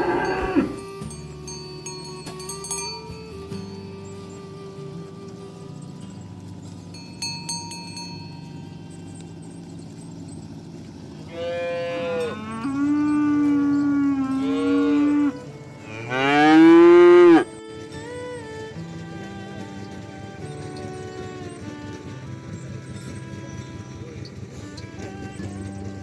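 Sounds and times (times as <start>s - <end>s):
cattle mooing: 0.0s - 1.0s, 11.1s - 17.5s.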